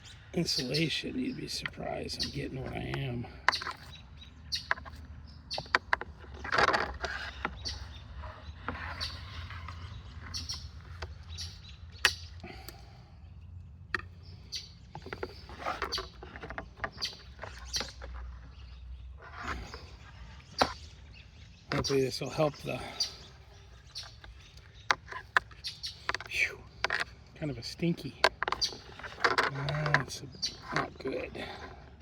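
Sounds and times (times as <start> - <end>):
plastic clicks knocks and scrapes: 1.5 - 12.8, 13.9 - 20.9, 21.6 - 22.0, 23.5 - 31.8.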